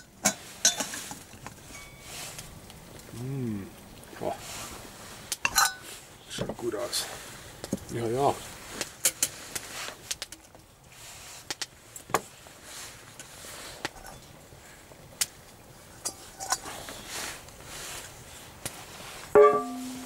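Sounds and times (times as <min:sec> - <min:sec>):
held tone: 0:19.4 - 0:20.0
spoon clinking on metal pot: 0:19.4 - 0:20.0.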